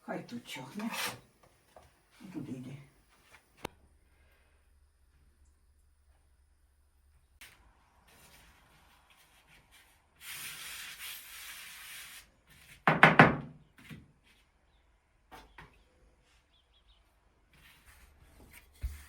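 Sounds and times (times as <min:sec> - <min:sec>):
scraping rub: 0:00.7 - 0:01.2.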